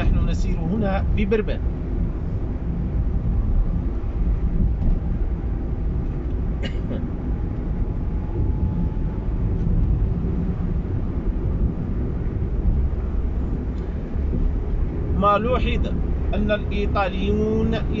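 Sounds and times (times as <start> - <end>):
car engine and road noise: 0.0 - 18.0.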